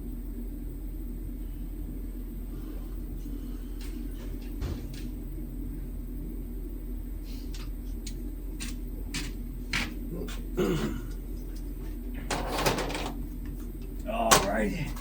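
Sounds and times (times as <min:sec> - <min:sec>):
steady low hum: 0:00.0 - 0:15.0
metal clatter: 0:12.2 - 0:13.2.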